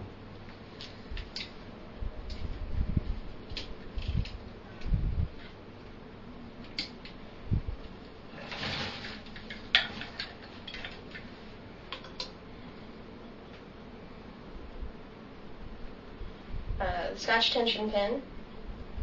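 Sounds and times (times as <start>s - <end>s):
short scrape: 8.4s - 9.3s.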